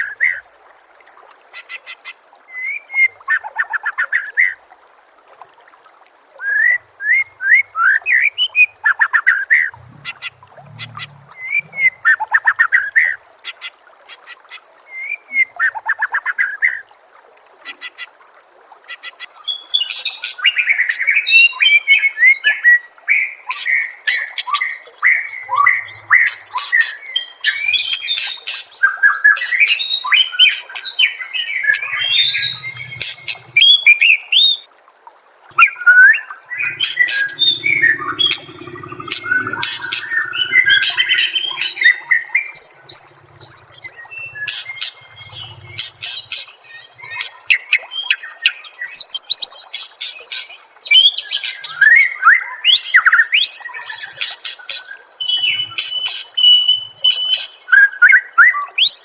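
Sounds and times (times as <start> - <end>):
songbird whistling: 48.8 - 49.5.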